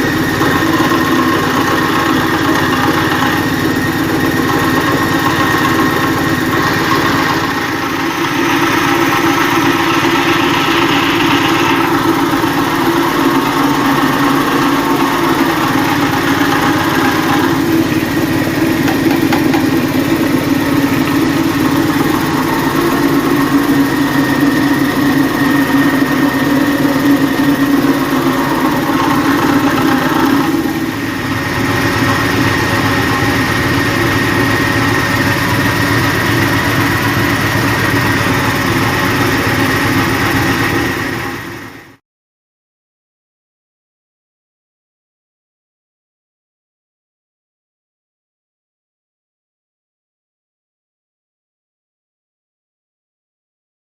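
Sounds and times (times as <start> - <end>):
spice grinding machine running: 0.0 - 42.0.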